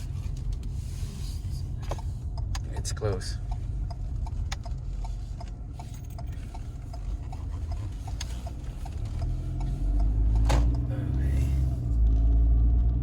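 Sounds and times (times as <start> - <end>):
engine and road rumble: 0.0 - 13.0
turn signal clicking: 1.8 - 12.2.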